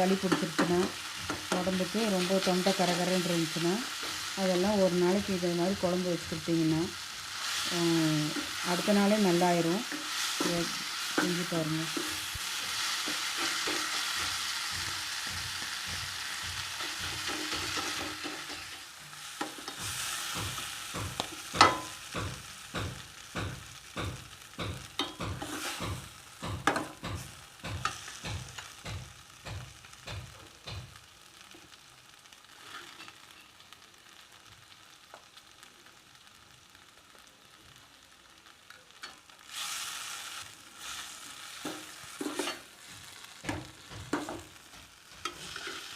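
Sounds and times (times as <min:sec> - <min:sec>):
spoon stirring and knocking pan: 0:00.0 - 0:06.4, 0:08.2 - 0:31.7, 0:40.8 - 0:45.9
vegetables sizzling in oil: 0:00.0 - 0:45.9.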